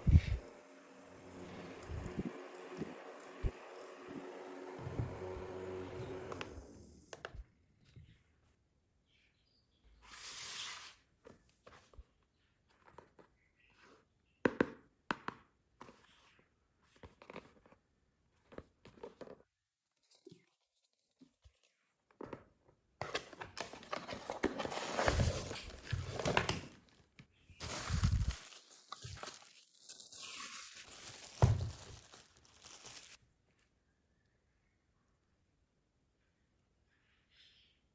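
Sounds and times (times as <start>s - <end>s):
packaging crinkling and rustling: 23.1s - 33.2s.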